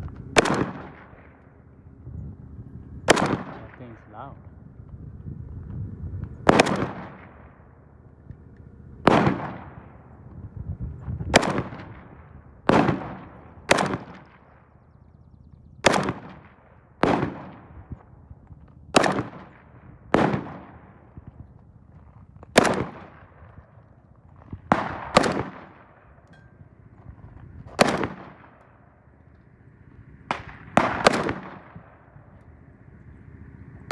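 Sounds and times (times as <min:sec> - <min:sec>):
rifle shots cracking: 0:00.3 - 0:01.5, 0:03.1 - 0:04.0, 0:06.5 - 0:07.8, 0:09.0 - 0:10.1, 0:11.3 - 0:14.7, 0:15.8 - 0:17.8, 0:18.9 - 0:21.2, 0:22.4 - 0:23.6, 0:24.6 - 0:26.3, 0:27.6 - 0:29.2, 0:30.2 - 0:32.1.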